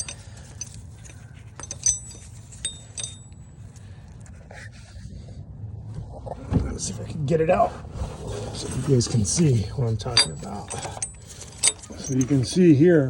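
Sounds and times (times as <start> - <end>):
metal tools clinking: 0.0 - 3.8, 8.7 - 12.8.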